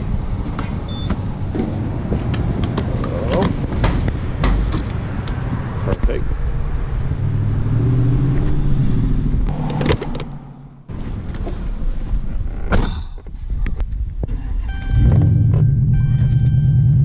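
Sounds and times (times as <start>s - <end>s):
car engine running: 6.5s - 12.0s.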